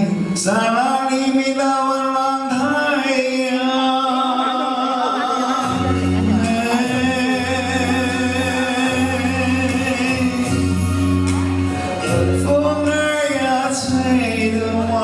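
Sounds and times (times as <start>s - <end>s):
sustained melody notes: 3.6s - 15.0s
low bass line: 5.6s - 15.0s.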